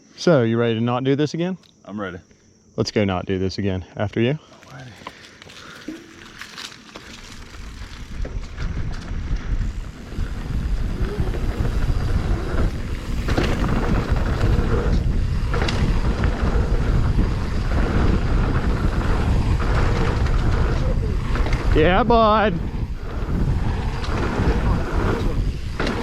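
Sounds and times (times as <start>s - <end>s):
bike tyres rumbling over trail: 4.8s - 26.0s
bike striking rocks: 5.0s - 21.9s, 22.7s - 26.0s
wind rushing over microphone: 7.5s - 26.0s.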